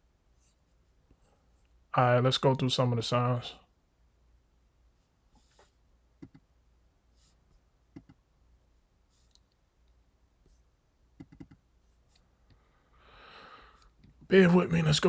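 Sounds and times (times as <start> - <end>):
computer mouse clicks: 6.2 - 6.4, 7.9 - 8.2, 11.2 - 11.6.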